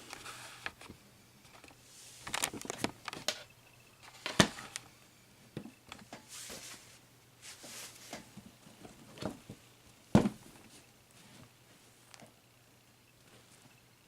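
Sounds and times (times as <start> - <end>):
handling clicks and rustles: 1.5 - 4.9.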